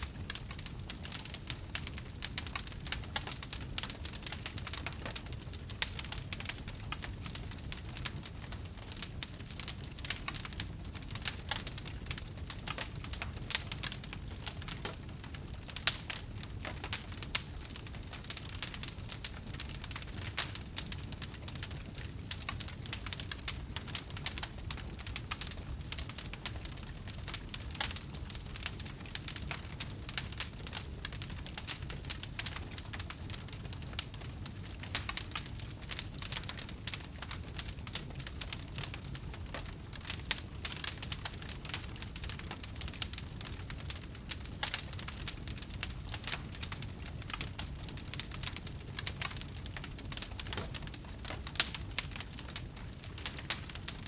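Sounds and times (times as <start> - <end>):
bonfire crackling and popping: 0.0 - 54.0
low rumble of flames: 0.0 - 54.0.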